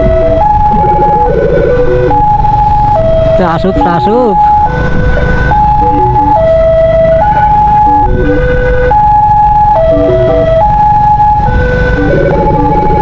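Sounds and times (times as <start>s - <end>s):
low rumble: 0.0s - 3.4s
ambulance siren hi-lo: 0.0s - 13.0s.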